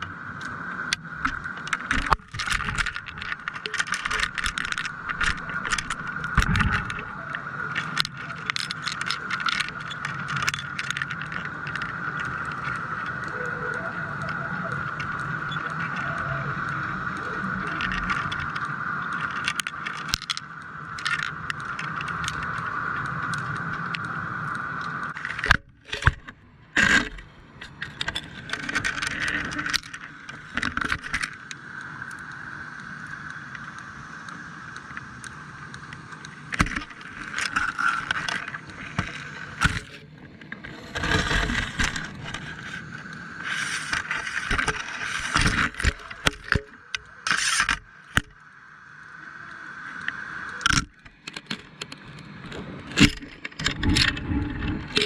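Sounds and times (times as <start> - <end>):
knocks and scrapes: 36.6 - 47.8.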